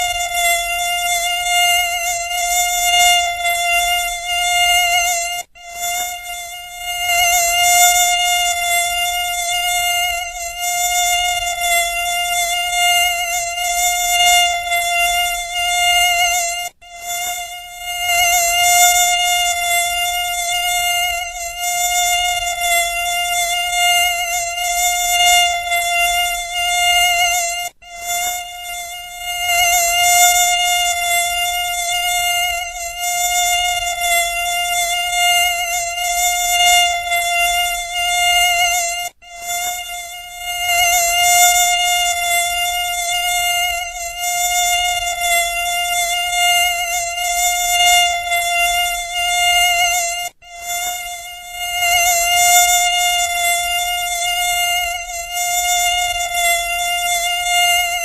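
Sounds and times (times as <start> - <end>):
mosquito whine: 0.0 - 58.0.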